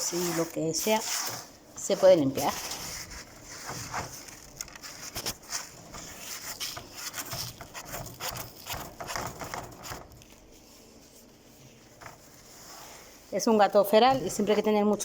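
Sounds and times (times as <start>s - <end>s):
rubbing and scraping: 0.0s - 15.0s
small knocks and rustles: 1.1s - 13.0s.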